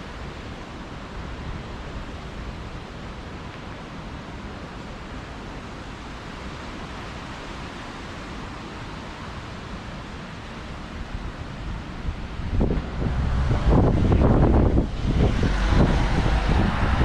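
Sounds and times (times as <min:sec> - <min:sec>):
strong wind rushing: 0:11.1 - 0:17.0.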